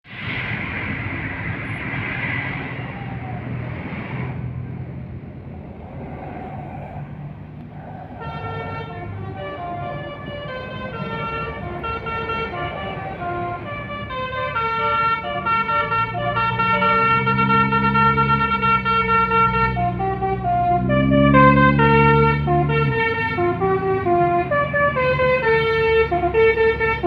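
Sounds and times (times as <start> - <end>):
bus engine: 0.0 - 27.0
road noise: 0.0 - 27.0
musical bus horn melody: 8.1 - 27.0.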